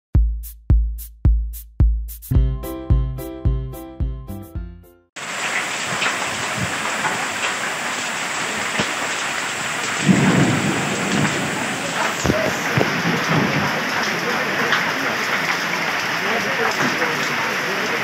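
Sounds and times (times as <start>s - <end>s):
heavy rain: 5.2s - 18.0s
low rumble of thunder: 10.0s - 14.0s.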